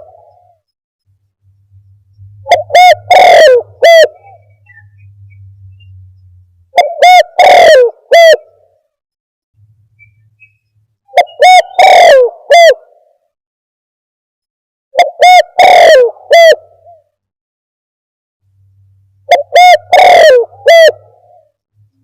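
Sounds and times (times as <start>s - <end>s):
dove cooing: 2.4s - 5.1s, 6.7s - 8.7s, 11.1s - 13.1s, 15.0s - 17.1s, 19.3s - 21.6s.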